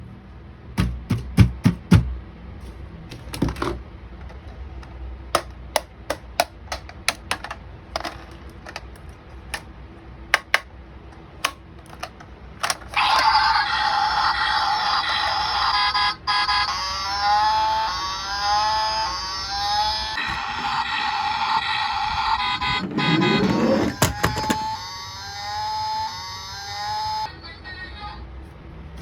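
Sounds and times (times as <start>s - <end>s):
plastic toys clicking and knocking: 3.2s - 9.7s, 10.3s - 13.4s, 22.2s - 24.8s.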